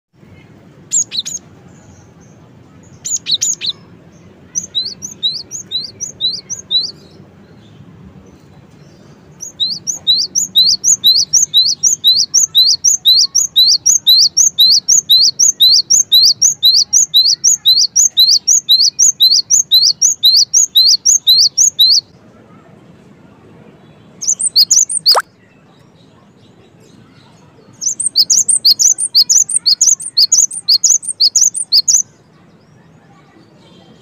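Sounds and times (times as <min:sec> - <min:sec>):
bird chattering and whistling: 0:00.9 - 0:01.4, 0:02.9 - 0:03.9, 0:04.5 - 0:07.1, 0:09.4 - 0:22.1, 0:24.2 - 0:25.3, 0:27.8 - 0:32.1.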